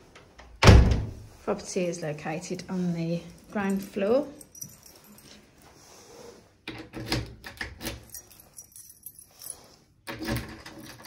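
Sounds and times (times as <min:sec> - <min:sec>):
keys jangling: 0:03.3 - 0:05.7, 0:06.9 - 0:11.0.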